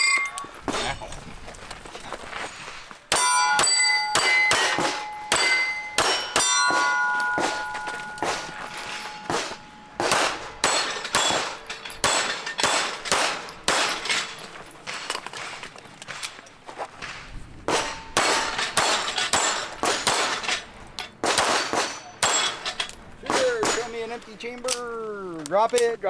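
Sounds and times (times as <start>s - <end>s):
steel plates ringing: 0.0s - 0.7s, 3.1s - 17.0s, 17.7s - 24.9s
pistol shots: 3.1s - 15.2s, 17.7s - 24.8s.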